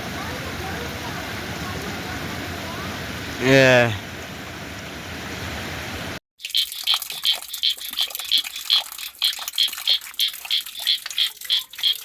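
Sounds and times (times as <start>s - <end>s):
heavy rain: 0.0s - 6.2s
faint trickling water: 6.4s - 12.0s
high rhythmic chirping: 6.4s - 12.0s.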